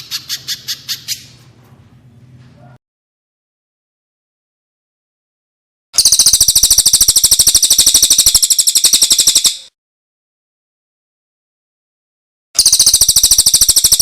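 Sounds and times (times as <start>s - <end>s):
songbird trilling high chirps: 6.0s - 9.7s.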